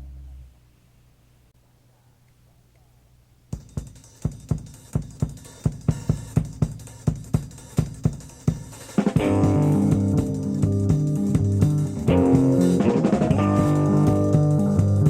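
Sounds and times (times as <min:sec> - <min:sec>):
tape hiss and hum: 0:00.0 - 0:15.0
drum kit playing: 0:03.5 - 0:15.0.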